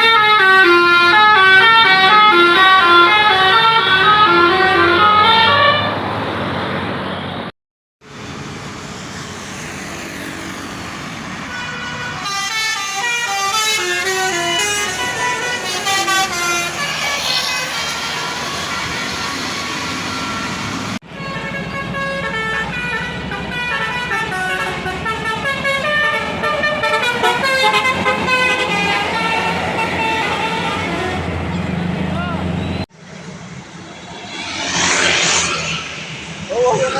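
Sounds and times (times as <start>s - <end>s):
multi-tone bus horn tune: 0.0s - 6.1s, 11.4s - 31.8s
vehicle noise: 0.0s - 36.9s.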